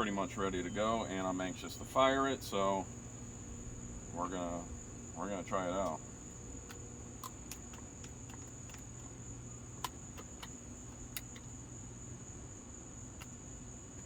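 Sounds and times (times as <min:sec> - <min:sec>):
crickets droning: 0:00.0 - 0:14.0
low background hum: 0:00.0 - 0:14.0
light clicks and taps: 0:05.8 - 0:06.0, 0:06.6 - 0:09.1, 0:09.8 - 0:11.5.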